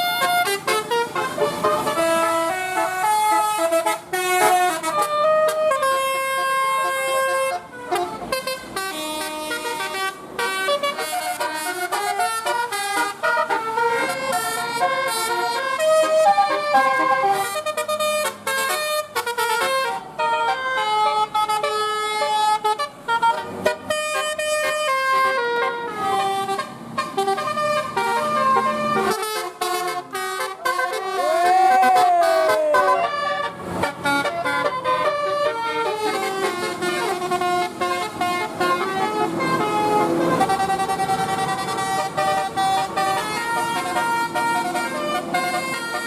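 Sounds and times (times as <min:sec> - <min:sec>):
multi-trumpet air horn tune: 0:00.0 - 0:46.0.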